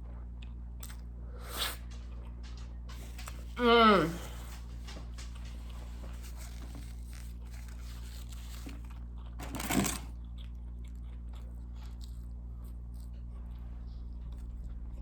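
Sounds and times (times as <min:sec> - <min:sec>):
chewing and mouth sounds: 0:00.0 - 0:03.6, 0:10.1 - 0:15.0
steady electrical hum: 0:00.0 - 0:15.0.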